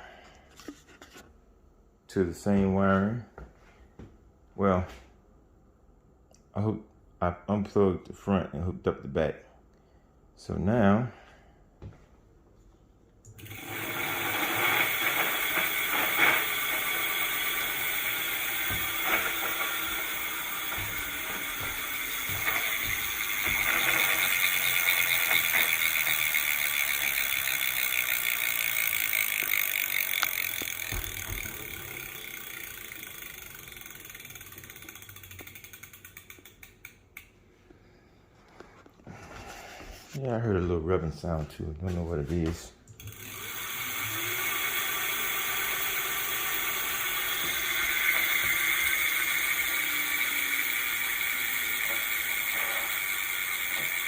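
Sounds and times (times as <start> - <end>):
electric motor whine: 13.4 - 34.2, 43.2 - 54.0
coasting wheel ticks: 13.4 - 37.3.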